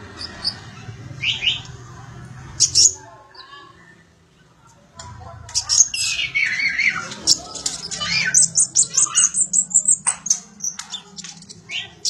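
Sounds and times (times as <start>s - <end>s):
sunbird singing: 0.0s - 1.8s, 5.6s - 12.0s.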